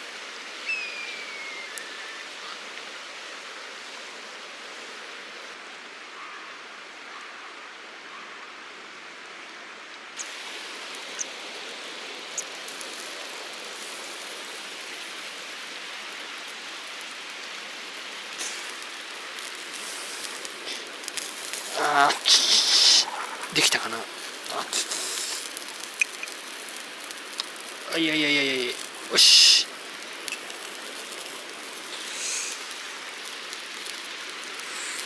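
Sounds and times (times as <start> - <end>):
stream water rushing: 10.2 - 35.0.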